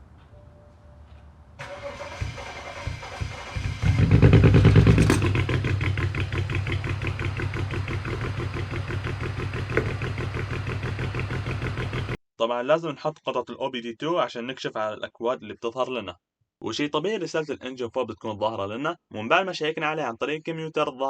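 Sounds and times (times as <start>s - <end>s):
starter cranking engine: 1.6s - 12.1s
rough misfiring engine idle: 1.6s - 12.2s.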